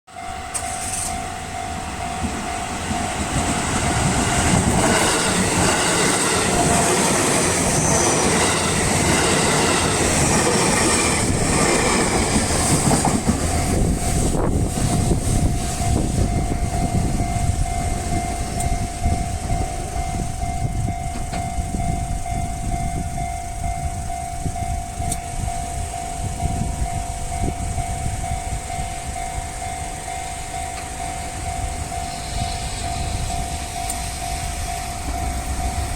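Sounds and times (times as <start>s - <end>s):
train rumbling and clattering: 0.1s - 35.9s
level crossing bell ringing: 15.8s - 35.9s.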